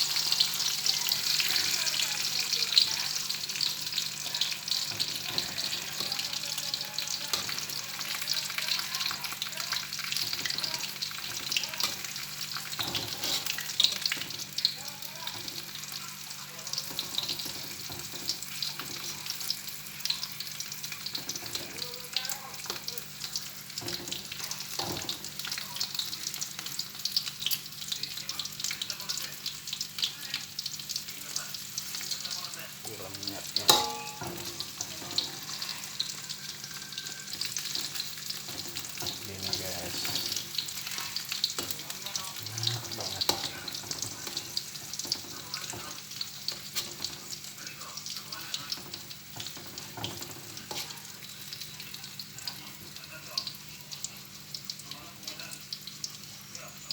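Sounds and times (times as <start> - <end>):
fruit frying in hot oil: 0.0 - 56.9
utensil stirring in pan: 0.0 - 56.9.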